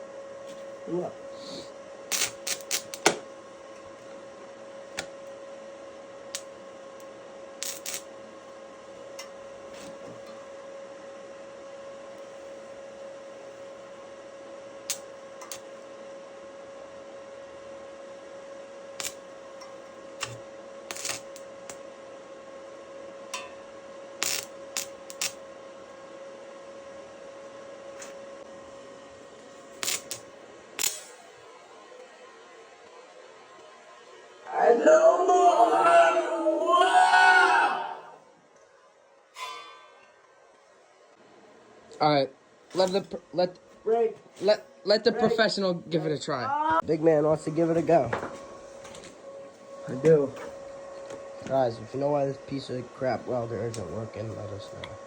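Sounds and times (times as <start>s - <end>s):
steady hum: 0.0s - 55.0s
welding electrode crackling: 2.1s - 3.1s, 7.6s - 8.1s, 19.0s - 19.2s, 20.2s - 21.8s, 24.2s - 25.4s, 29.8s - 31.1s.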